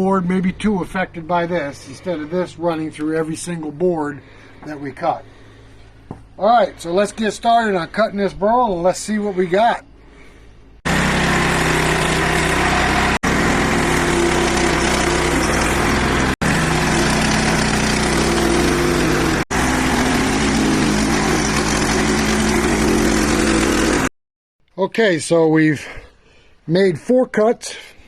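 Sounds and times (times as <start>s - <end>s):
sawmill engine running under load: 10.9s - 24.1s.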